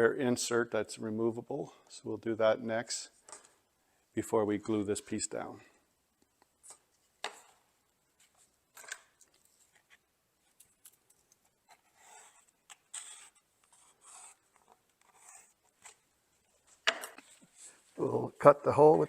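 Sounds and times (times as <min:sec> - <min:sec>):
soft rubbing or scraping: 0:11.6 - 0:18.0.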